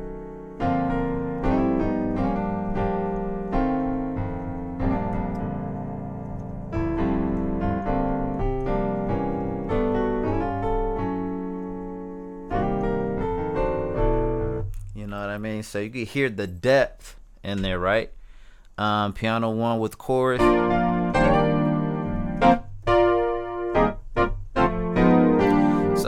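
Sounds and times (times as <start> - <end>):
piano chords: 0.0 - 16.8, 20.3 - 26.0.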